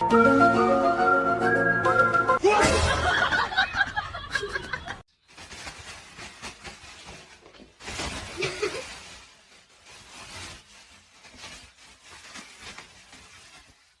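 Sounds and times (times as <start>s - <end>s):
person laughing: 2.4s - 5.0s.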